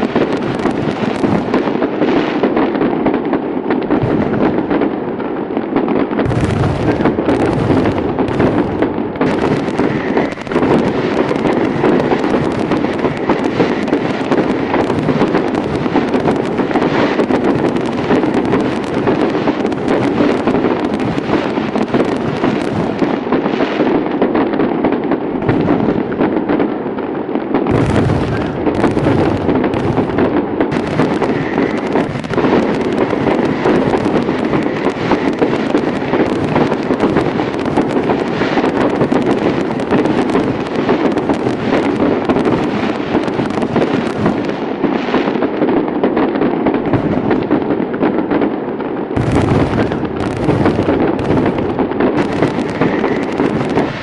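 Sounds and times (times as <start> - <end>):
fireworks bangs and crackles: 0.0 - 54.0
deep firework bang: 3.9 - 4.9, 6.2 - 23.7, 25.4 - 26.3, 27.7 - 40.0, 46.8 - 48.0, 49.2 - 54.0.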